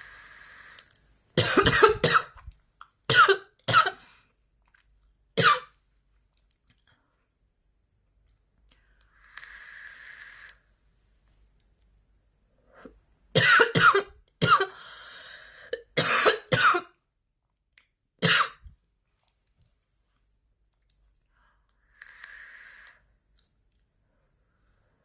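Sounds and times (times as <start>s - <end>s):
woman coughing: 1.4s - 2.4s, 3.1s - 4.0s, 5.4s - 5.7s, 13.4s - 14.8s, 15.8s - 16.9s, 18.2s - 18.7s.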